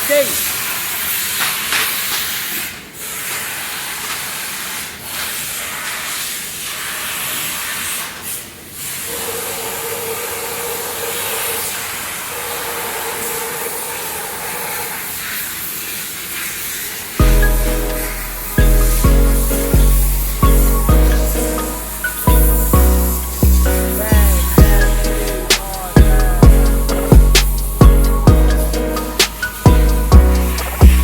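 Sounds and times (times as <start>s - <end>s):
compressed air hissing: 0.0s - 31.0s
music: 17.2s - 31.0s.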